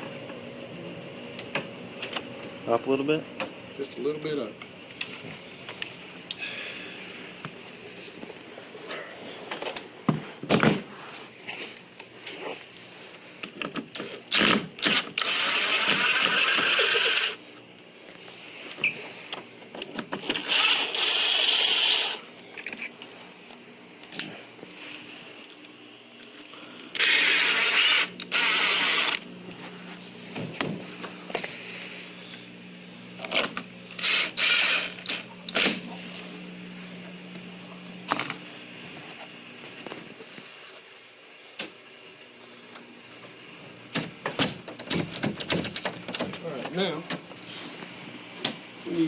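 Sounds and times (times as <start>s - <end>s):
power drill driving screws: 14.0s - 17.4s, 20.2s - 22.2s, 27.0s - 29.2s, 33.9s - 35.8s.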